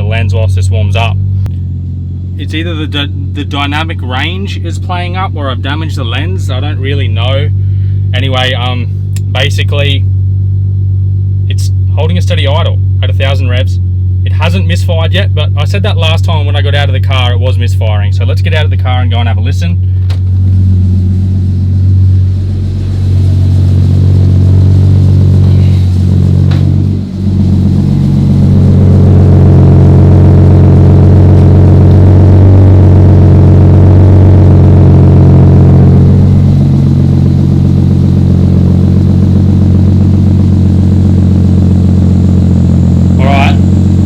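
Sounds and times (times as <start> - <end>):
car engine idling: 0.0 - 44.0
brief thump: 19.9 - 21.6, 25.4 - 27.3.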